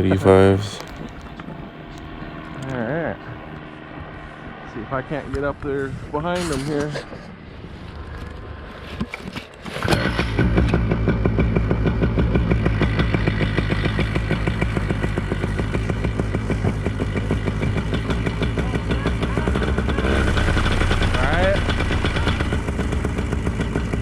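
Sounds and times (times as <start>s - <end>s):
two-stroke engine running: 9.8s - 24.0s.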